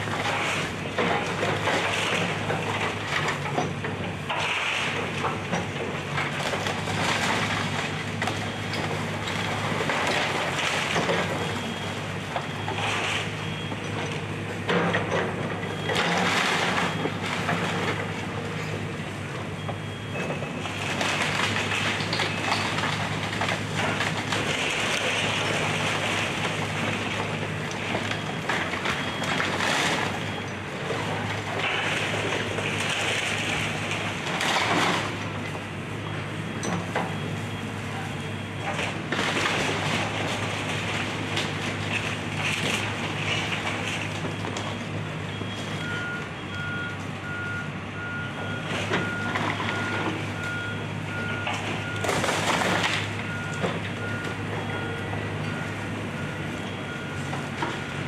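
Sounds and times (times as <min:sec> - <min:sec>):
crunching and cracking of demolition: 0:00.0 - 0:47.2, 0:48.6 - 0:56.6
excavator diesel engine running: 0:00.0 - 0:58.0.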